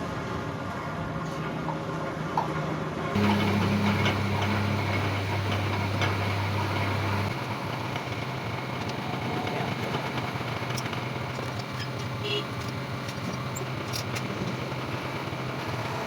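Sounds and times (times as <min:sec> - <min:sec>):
lathe motor humming: 0:03.2 - 0:16.0
workshop noise: 0:03.2 - 0:16.0.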